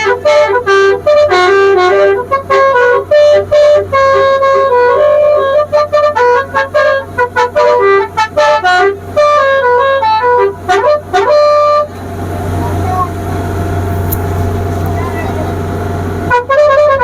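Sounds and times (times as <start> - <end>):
low drone with rushing noise: 13.7 - 16.3.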